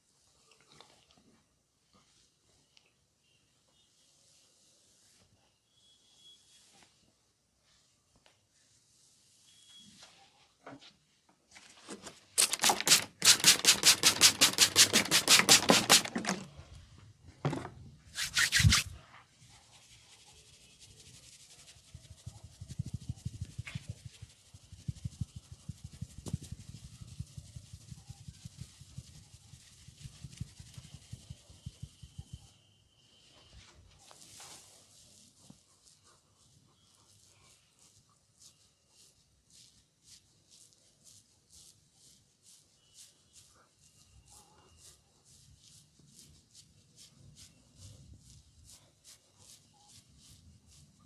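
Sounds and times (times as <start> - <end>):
hands rubbing hair and scalp: 11.6 - 16.6, 18.1 - 32.5, 33.4 - 51.0.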